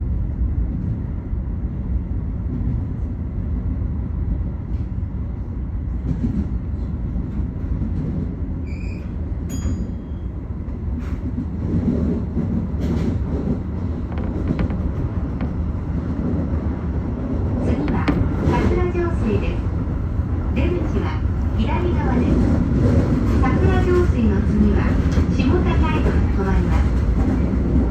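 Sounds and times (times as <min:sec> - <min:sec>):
train low rumble: 0:00.0 - 0:27.9
train wheel clicks: 0:11.0 - 0:16.5, 0:17.5 - 0:19.0.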